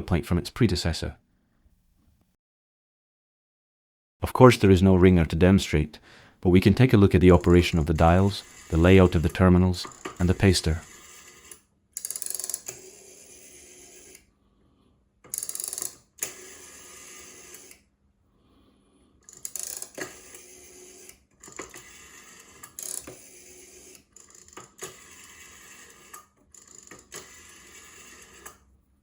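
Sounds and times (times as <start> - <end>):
dial whirring and clicking back: 7.4 - 14.2, 15.3 - 17.8, 19.3 - 28.7
rotary dial winding: 7.4 - 14.2, 15.3 - 17.8, 19.3 - 28.6.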